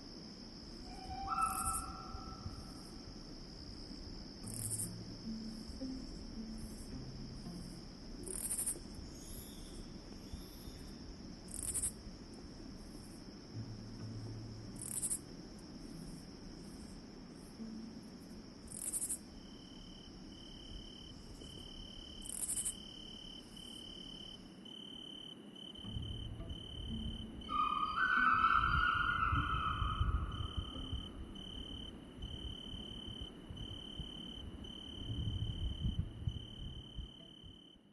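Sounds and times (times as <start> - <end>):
brighter cricket chirp: 0.0 - 37.9
cricket steady high trill: 0.0 - 37.9
lower repeating chirp: 4.4 - 9.8, 25.9 - 32.8.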